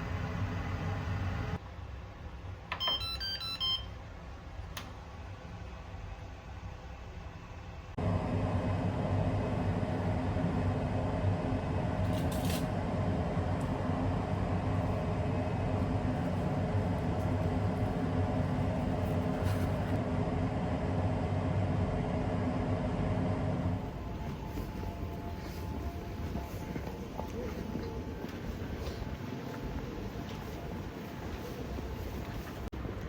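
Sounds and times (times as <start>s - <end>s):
vehicle interior drone: 7.9s - 33.0s.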